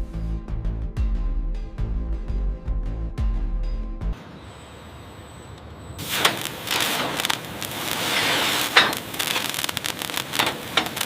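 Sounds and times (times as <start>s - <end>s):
crackling and scraping: 6.0s - 11.0s
sharp clicks: 8.7s - 11.0s.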